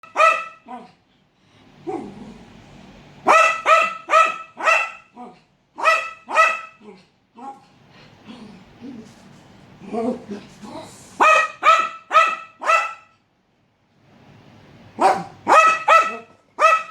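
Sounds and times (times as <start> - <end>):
dog barking: 0.0 - 0.9, 3.2 - 7.6, 11.2 - 13.1, 15.0 - 16.9.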